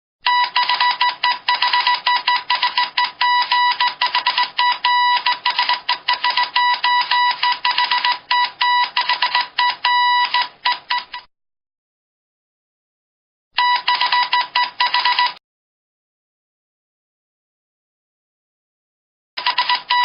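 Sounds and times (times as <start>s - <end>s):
morse code beeps: 0.2s - 11.3s, 13.6s - 15.4s, 19.4s - 20.0s.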